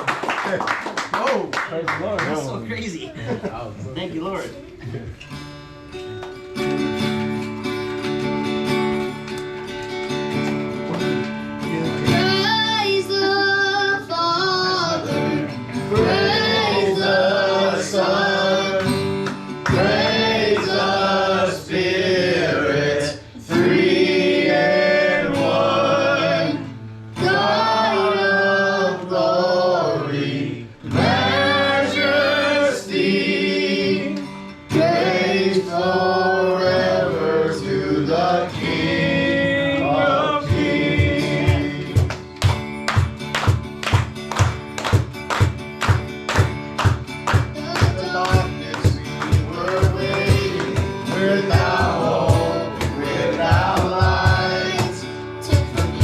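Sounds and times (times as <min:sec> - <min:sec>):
strummed acoustic guitar: 0:04.5 - 0:56.0
voices singing worship song: 0:11.8 - 0:42.4, 0:45.9 - 0:56.0.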